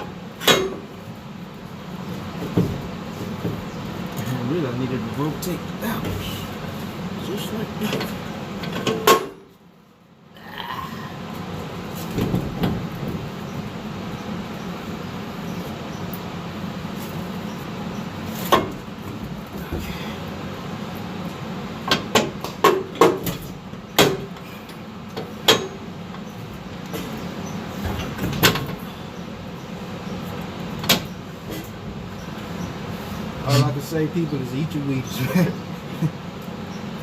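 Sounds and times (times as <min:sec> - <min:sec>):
metal clanks and knocks: 0:00.0 - 0:01.0, 0:02.3 - 0:03.9, 0:07.8 - 0:09.5, 0:12.1 - 0:13.4, 0:18.4 - 0:20.2, 0:21.8 - 0:28.9, 0:30.8 - 0:32.0
low shop hum: 0:00.0 - 0:37.0.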